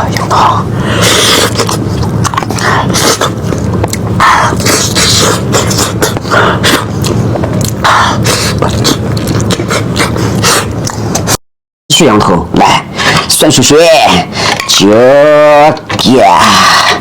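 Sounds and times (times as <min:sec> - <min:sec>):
wet chewing and slurping: 0:00.1 - 0:11.4
sharp mouth clicks: 0:01.0 - 0:11.4.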